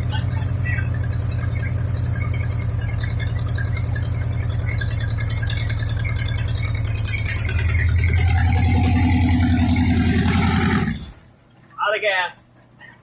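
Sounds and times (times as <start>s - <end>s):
car engine running: 0.0s - 11.4s.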